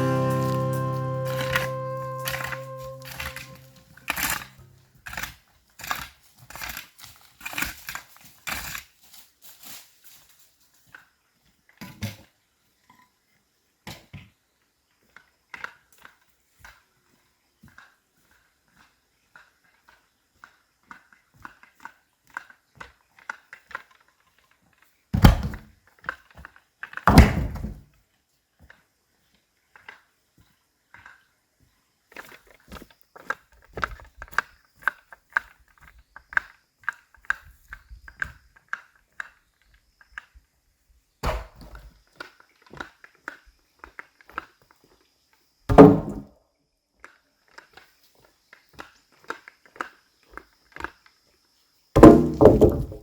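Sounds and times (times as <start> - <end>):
heavy wooden thuds: 45.7 - 46.3, 52.0 - 53.0.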